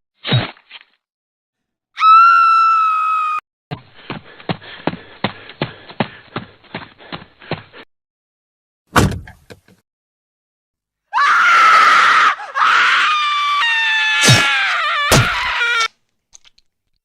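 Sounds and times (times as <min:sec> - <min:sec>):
woman screaming: 0:02.0 - 0:03.4, 0:11.1 - 0:15.9.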